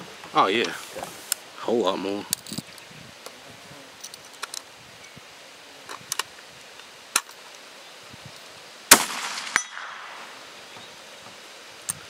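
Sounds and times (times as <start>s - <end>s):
bullet striking steel target: 8.9s - 10.2s
rifle shot: 8.9s - 10.4s.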